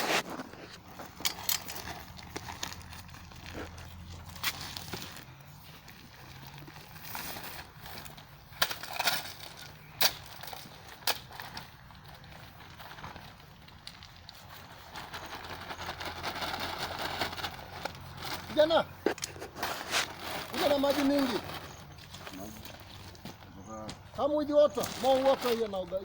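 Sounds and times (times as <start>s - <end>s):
shovels scraping gravel mix: 0.0s - 26.0s.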